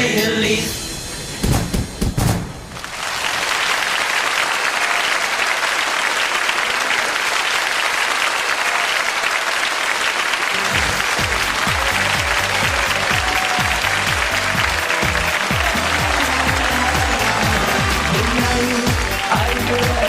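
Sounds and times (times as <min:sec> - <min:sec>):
audience applauding: 0:02.8 - 0:20.0
music with heavy beat: 0:10.7 - 0:20.0.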